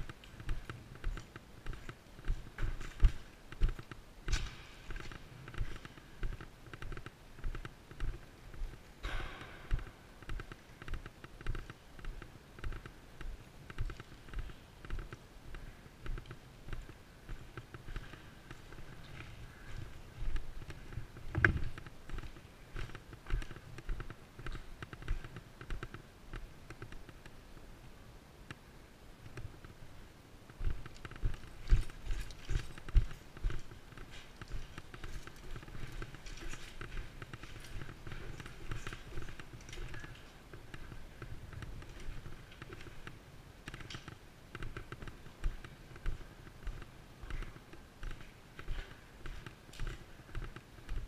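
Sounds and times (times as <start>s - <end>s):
gear clicking and knocking: 0.0s - 19.3s, 30.6s - 51.0s
heavy footsteps: 0.0s - 25.9s, 30.6s - 43.9s, 44.6s - 51.0s.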